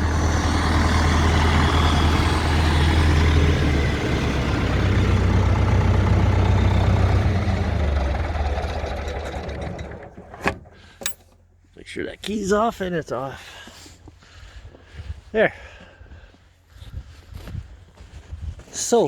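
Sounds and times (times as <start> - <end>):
tractor diesel engine idling: 0.0 - 13.6.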